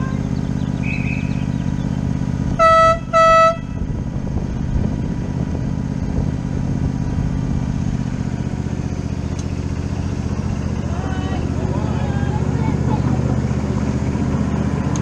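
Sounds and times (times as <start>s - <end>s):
steady low rumble: 0.0s - 15.0s
miniature train whistle toots: 2.6s - 3.6s.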